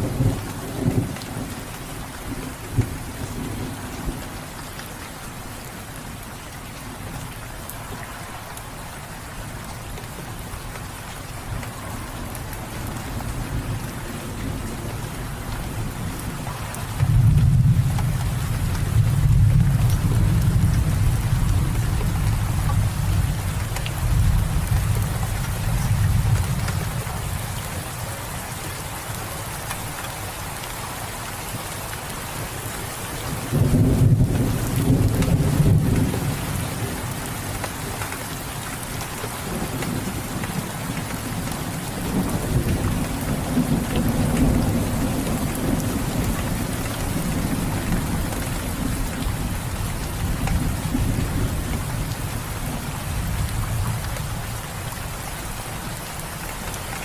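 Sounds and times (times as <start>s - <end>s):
steady rain falling: 0.0s - 57.0s
thunder rumbling: 33.4s - 37.5s.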